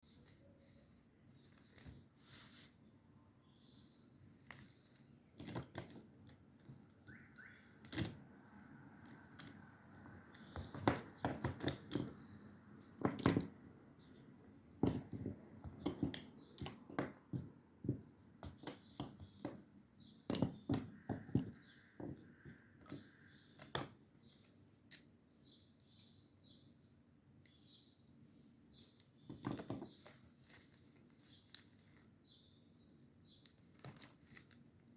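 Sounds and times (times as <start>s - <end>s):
small objects clicking on a desk: 4.4s - 8.3s, 9.0s - 12.3s, 14.8s - 25.1s, 28.9s - 30.6s.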